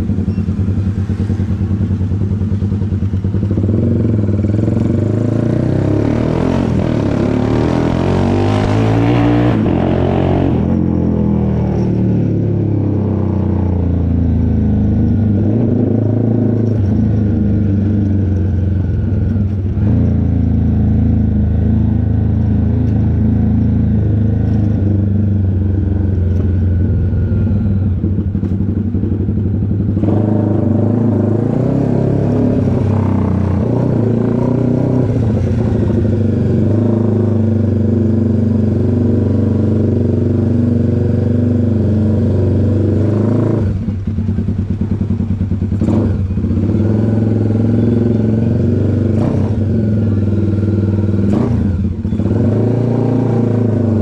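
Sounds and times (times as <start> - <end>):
motorcycle engine idling: 0.0 - 5.2, 25.2 - 30.0, 43.8 - 48.8, 49.8 - 52.2.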